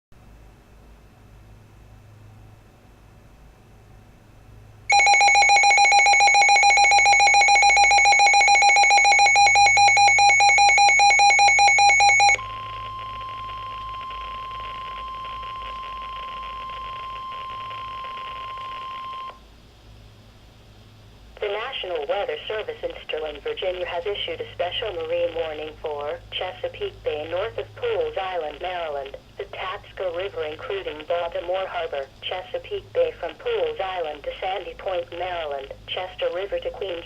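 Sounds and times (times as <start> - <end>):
rapidly pulsing alarm beep: 4.9 - 19.3
steady warning alarm tone: 4.9 - 19.3.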